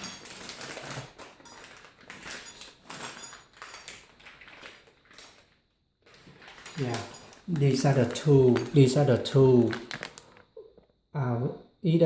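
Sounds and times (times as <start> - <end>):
small metal parts clinking: 0.0 - 4.8, 6.4 - 8.8
packaging rustling: 0.0 - 10.6.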